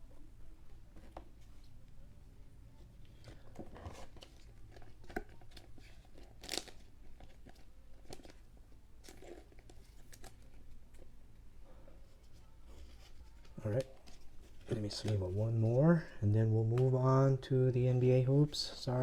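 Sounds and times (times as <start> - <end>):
cards rustling in plastic sleeves: 3.0 - 11.1, 12.1 - 17.4.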